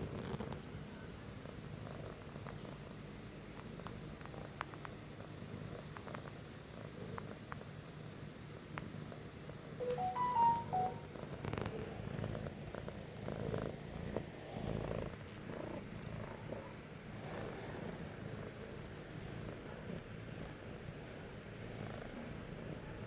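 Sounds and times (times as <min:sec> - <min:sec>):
cat purring: 0:01.4 - 0:07.8, 0:11.2 - 0:23.0
short tones stepping in pitch: 0:09.8 - 0:11.1.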